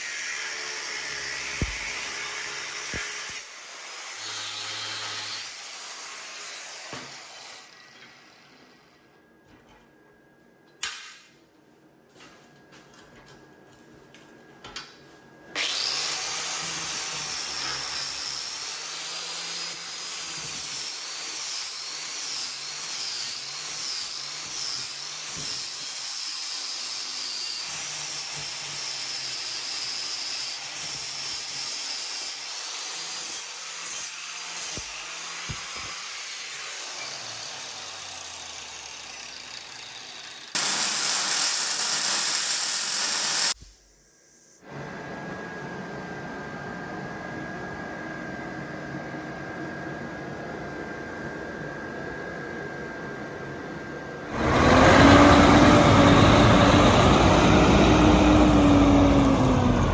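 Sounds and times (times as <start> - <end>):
power tool whining on metal: 0.0 - 8.9, 15.6 - 43.9, 54.3 - 59.9.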